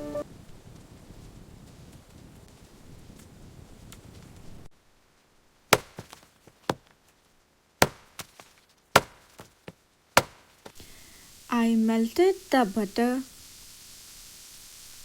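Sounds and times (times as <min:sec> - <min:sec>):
soft background hiss: 0:00.0 - 0:00.7, 0:04.5 - 0:15.0.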